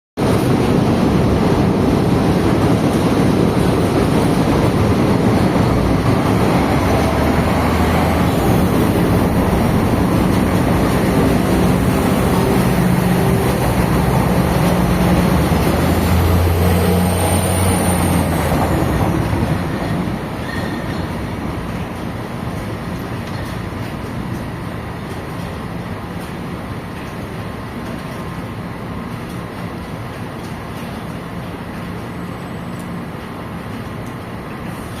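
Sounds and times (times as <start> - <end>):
diesel railcar rumbling: 0.2 - 35.0.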